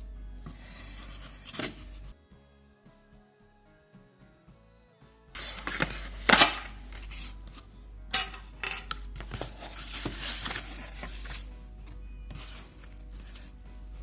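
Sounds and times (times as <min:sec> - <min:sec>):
faint background music: 0:00.0 - 0:14.0
packaging rustling and clattering: 0:08.6 - 0:11.5.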